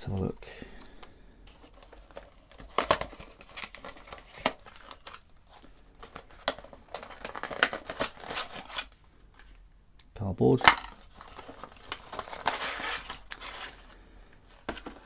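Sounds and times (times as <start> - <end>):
cardboard box crinkling: 1.5 - 8.9, 11.0 - 15.0.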